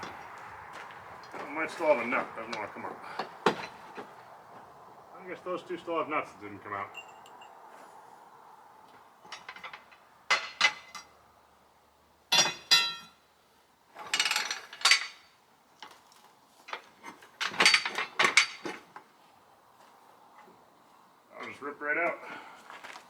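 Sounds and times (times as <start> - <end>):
hand tools knocking on metal bolts: 9.3 - 11.1, 12.3 - 13.2.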